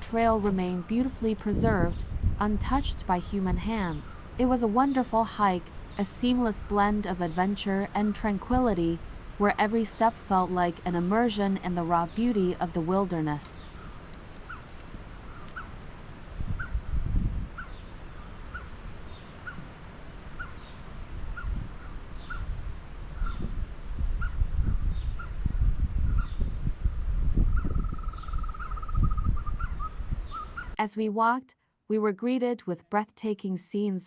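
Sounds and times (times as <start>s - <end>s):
low rumbling: 0.0s - 4.8s
bird trill: 27.6s - 30.8s.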